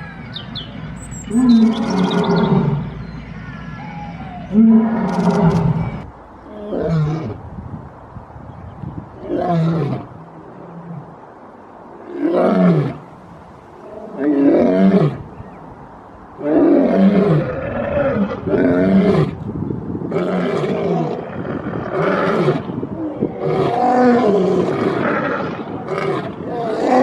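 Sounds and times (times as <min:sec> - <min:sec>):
lion roaring: 0:01.3 - 0:02.9, 0:03.5 - 0:07.3.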